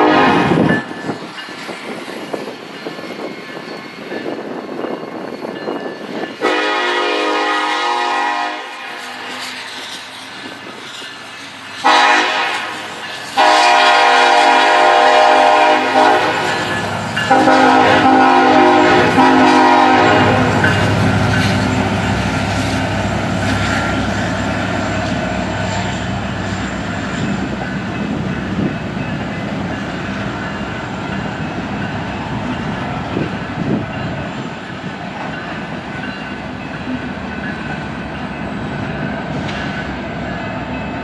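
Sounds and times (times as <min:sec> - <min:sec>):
locomotive air horn blasts: 0:00.0 - 0:00.6, 0:06.4 - 0:09.4, 0:11.8 - 0:21.0
low rumble of train: 0:00.0 - 0:41.0.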